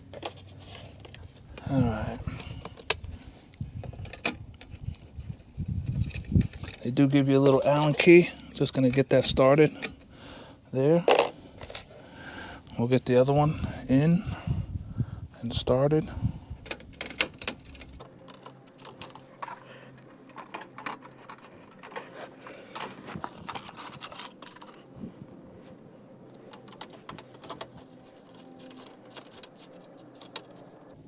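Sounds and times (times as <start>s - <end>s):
allen key clicking and scraping: 16.6s - 25.0s, 26.0s - 31.0s.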